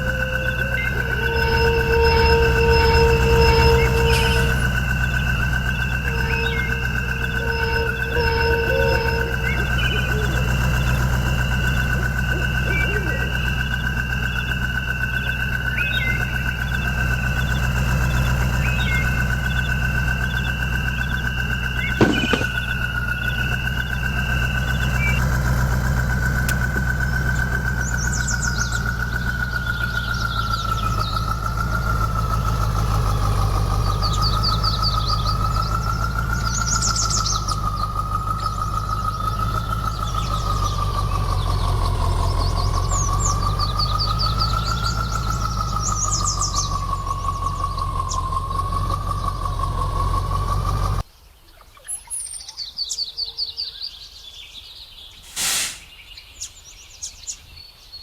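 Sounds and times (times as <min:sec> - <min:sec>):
high whine: 0:00.0 - 0:14.4
engine idling: 0:00.0 - 0:51.1
small birds chirping: 0:00.0 - 0:58.0.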